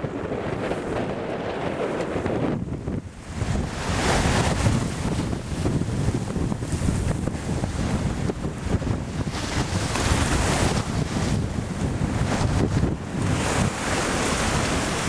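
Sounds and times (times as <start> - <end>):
sea water rushing: 0.0 - 15.0
wind buffeting microphone: 0.0 - 15.0.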